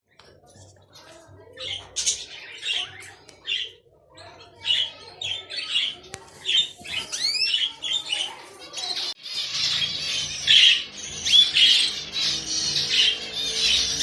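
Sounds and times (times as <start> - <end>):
chicks raspy begging calls: 9.3 - 14.0.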